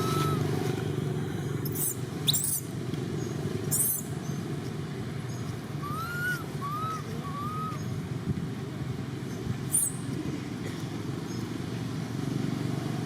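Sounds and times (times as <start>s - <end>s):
whistled animal calls: 0.0s - 0.5s, 5.8s - 8.0s.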